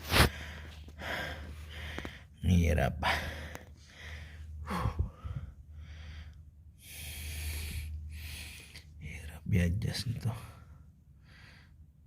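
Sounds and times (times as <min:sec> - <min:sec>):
man breathing hard: 0:00.0 - 0:02.4, 0:03.0 - 0:08.9, 0:10.6 - 0:12.0.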